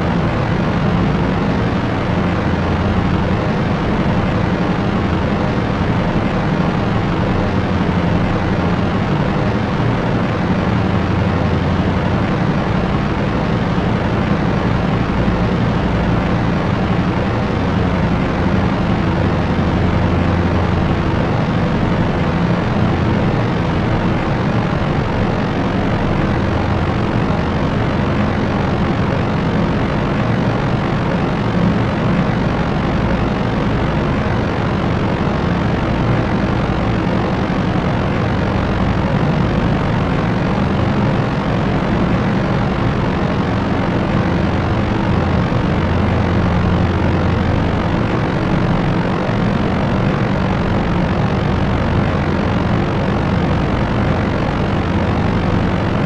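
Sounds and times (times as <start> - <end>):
propeller aircraft engines running: 0.0 - 56.0.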